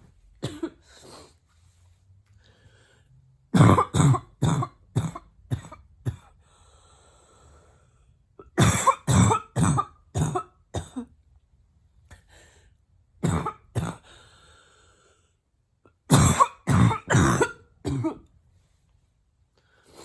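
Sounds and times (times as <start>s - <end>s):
barking coughs: 0.4s - 0.8s, 3.6s - 6.4s, 8.4s - 11.1s, 13.2s - 14.1s, 16.1s - 18.3s.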